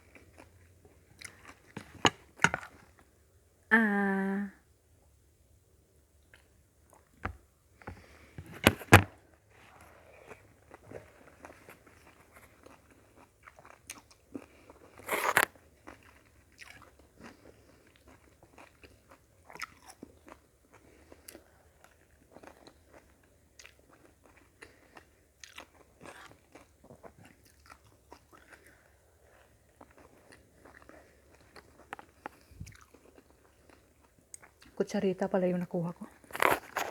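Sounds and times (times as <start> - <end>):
chewing and mouth noises: 0.0 - 2.9, 9.6 - 34.8.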